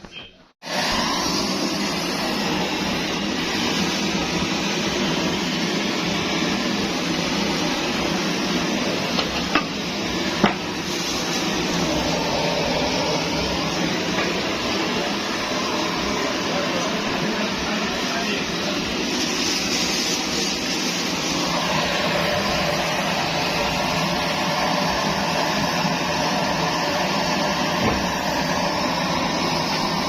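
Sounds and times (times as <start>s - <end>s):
pressure stove hissing: 0.6s - 30.0s.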